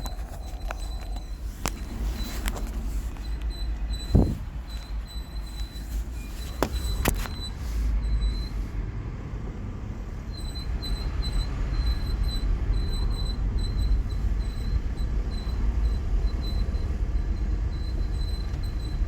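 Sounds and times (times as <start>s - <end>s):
low rumble: 0.0s - 4.9s
high-pitched wheel squeal: 0.0s - 8.7s.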